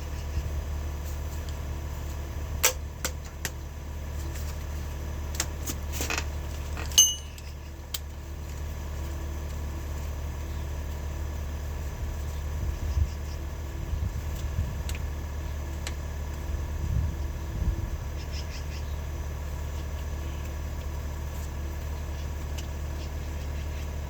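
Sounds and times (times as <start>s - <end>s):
steady low hum: 0.0s - 24.0s
metal clinks and knocks: 6.8s - 7.6s
ringing metallic ping: 7.0s - 7.5s.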